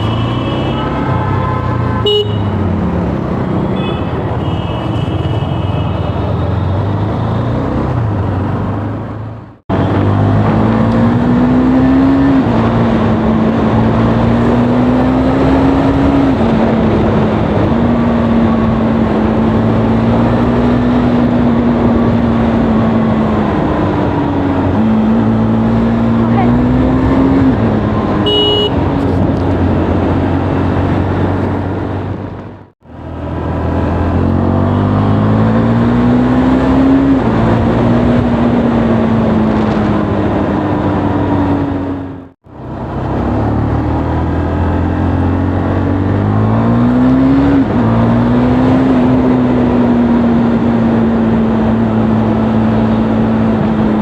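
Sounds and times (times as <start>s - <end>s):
vehicle horns honking: 0.0s - 2.6s, 3.6s - 6.2s, 28.2s - 28.9s
traffic noise: 0.0s - 54.0s
motorcycle engine revving: 6.0s - 32.2s, 32.8s - 54.0s.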